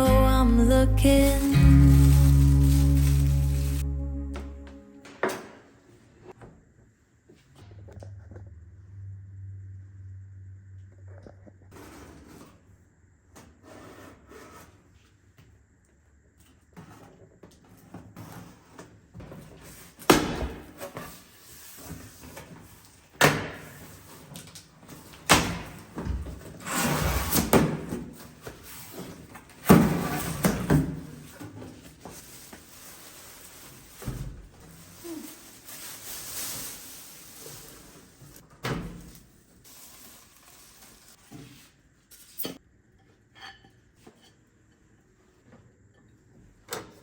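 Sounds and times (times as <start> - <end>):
rustling: 0.0 - 4.6, 31.2 - 38.4, 39.7 - 41.3.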